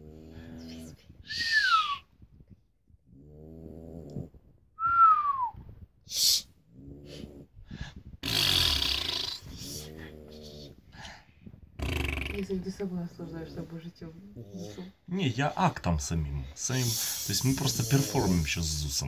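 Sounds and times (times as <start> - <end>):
whistling squeaks sliding down: 1.3 - 2.0
dog snoring: 3.1 - 4.4, 6.7 - 10.8, 11.8 - 12.5, 16.7 - 19.0
loud breathy snort: 6.0 - 12.5, 16.7 - 18.6
man imitating snoring: 8.2 - 10.7, 11.8 - 12.4, 16.8 - 19.0.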